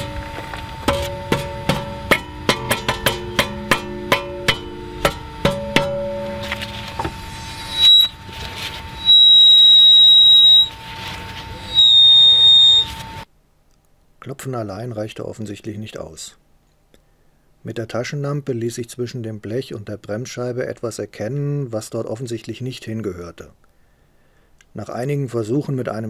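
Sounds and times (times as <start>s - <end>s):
brake disc squealing: 0.0s - 13.2s
metallic tapping knocks: 0.9s - 7.2s.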